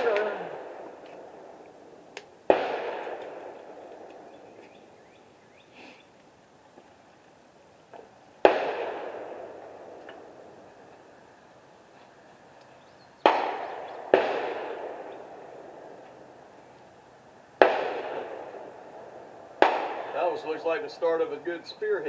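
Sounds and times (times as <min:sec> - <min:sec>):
rifle shots echoing: 0:00.0 - 0:05.0, 0:08.4 - 0:10.7, 0:13.2 - 0:16.5, 0:17.6 - 0:21.4.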